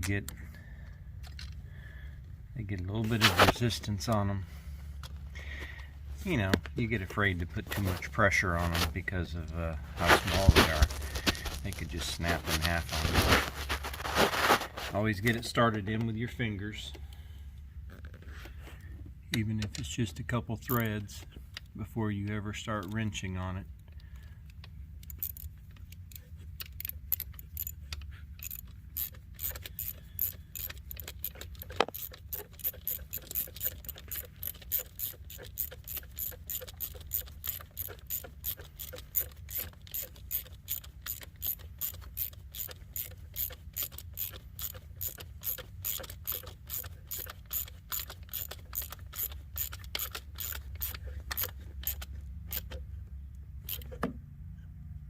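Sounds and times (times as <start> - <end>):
ratchet wrench clicking: 20.6 - 21.7, 23.8 - 52.9, 53.6 - 54.0.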